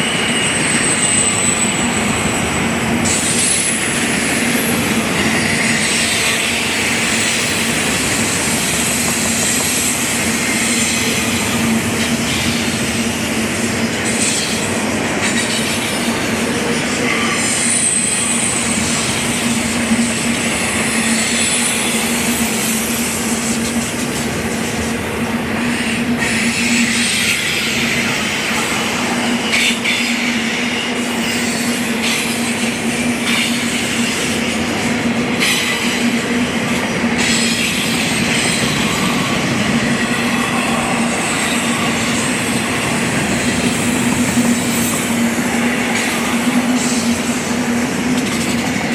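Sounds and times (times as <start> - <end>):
high wheel squeal: 0.0 - 12.7, 17.0 - 19.5, 37.2 - 47.3
train wheels rolling on rails: 0.0 - 48.9.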